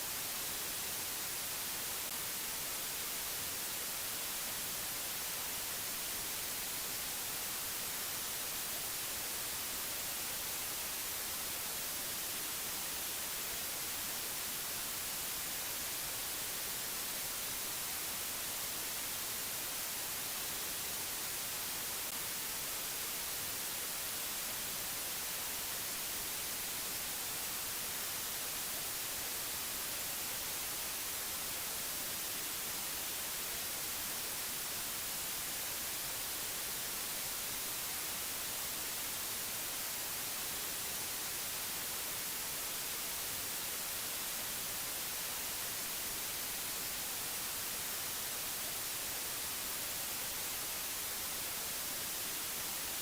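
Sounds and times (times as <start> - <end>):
steady static hiss: 0.0 - 53.0.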